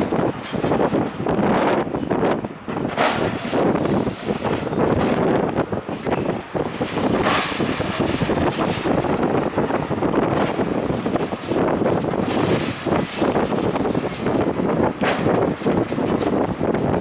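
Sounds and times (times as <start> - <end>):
demolition debris crashing: 0.0 - 1.8, 2.6 - 17.0
wind buffeting microphone: 0.0 - 17.0.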